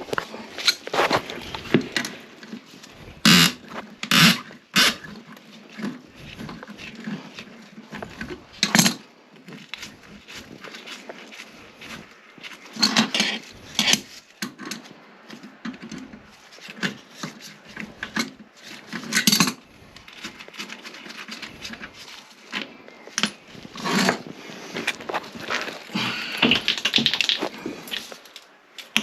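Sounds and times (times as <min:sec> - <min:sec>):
hard objects clinking and clattering: 0:23.0 - 0:29.0.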